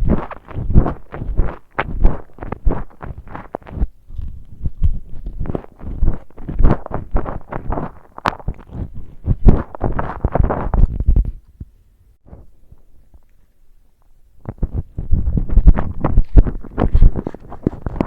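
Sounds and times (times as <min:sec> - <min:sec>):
close chewing of food: 0:00.0 - 0:11.1.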